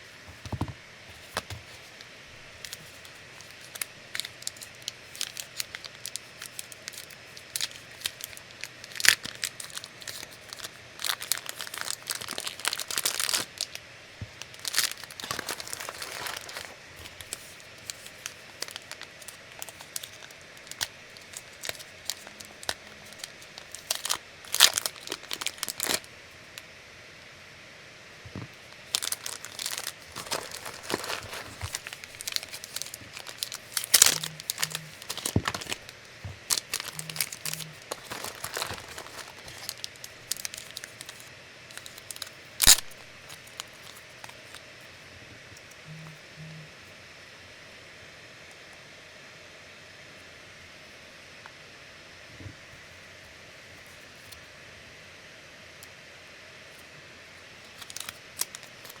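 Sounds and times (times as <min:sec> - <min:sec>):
packaging crinkling and tearing: 0:01.1 - 0:26.1, 0:28.6 - 0:44.6, 0:57.6 - 0:59.0.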